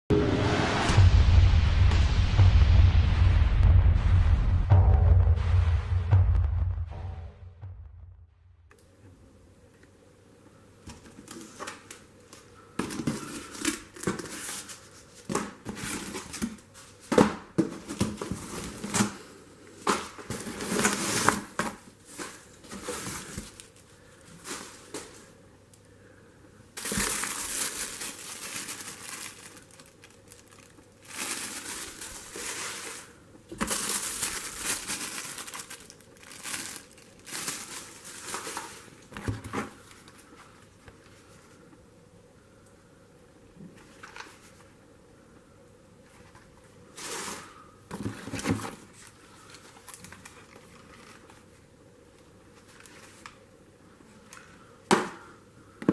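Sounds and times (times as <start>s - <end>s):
packing material crinkling: 26.8s - 40.3s, 48.3s - 51.6s.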